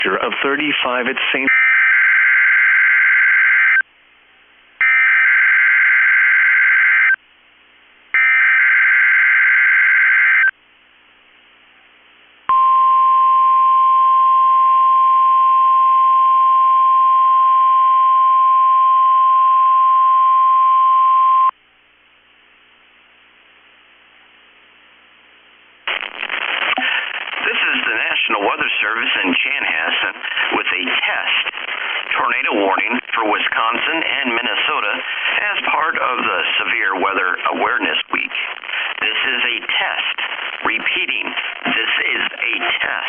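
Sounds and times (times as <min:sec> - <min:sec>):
steady warning alarm tone: 0:08.2 - 0:10.5.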